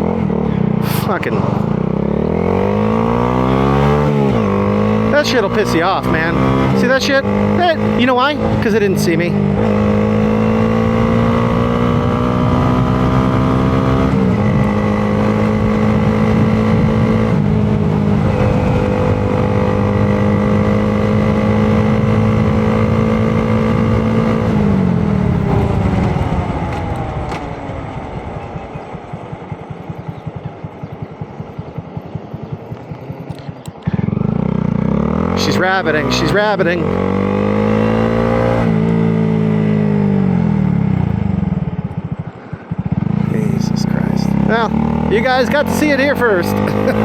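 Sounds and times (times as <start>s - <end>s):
motorcycle engine revving and idling: 0.0s - 47.0s.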